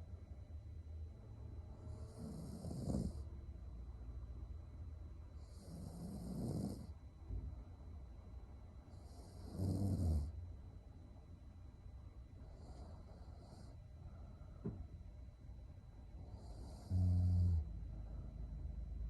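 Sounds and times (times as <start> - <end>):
woman snoring: 1.9 - 3.3, 5.4 - 7.0, 9.0 - 10.4, 16.2 - 17.7.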